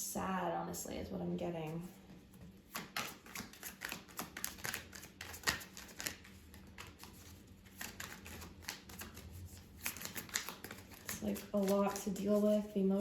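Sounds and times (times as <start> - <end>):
cards being shuffled: 2.6 - 12.8.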